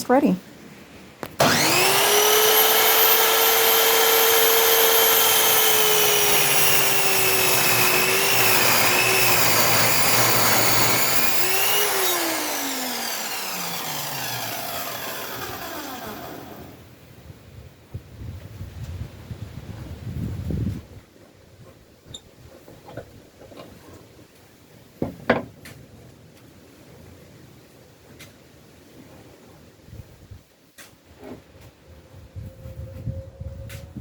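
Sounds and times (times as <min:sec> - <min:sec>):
chop saw whining: 0:01.3 - 0:16.9.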